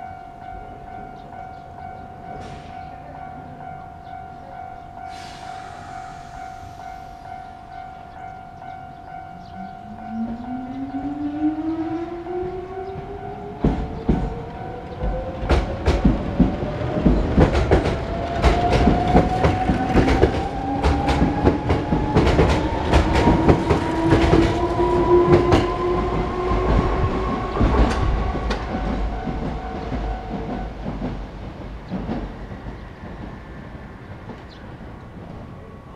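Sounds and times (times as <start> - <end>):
level crossing alarm ringing: 0.0 - 17.0
train wheels clattering: 12.8 - 35.4.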